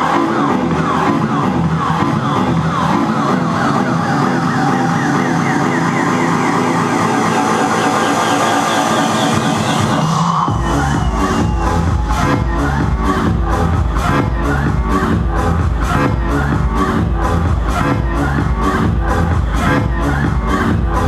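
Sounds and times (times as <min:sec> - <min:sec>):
heavy bass and beat: 0:00.0 - 0:21.0
siren-like synthesizer line: 0:03.6 - 0:12.8.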